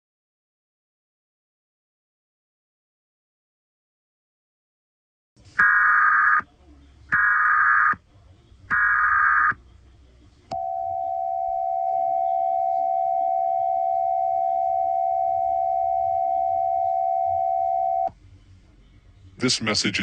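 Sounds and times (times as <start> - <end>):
screeching header data burst: 5.6 - 6.4, 7.2 - 8.0
steady attention tone: 10.5 - 18.2.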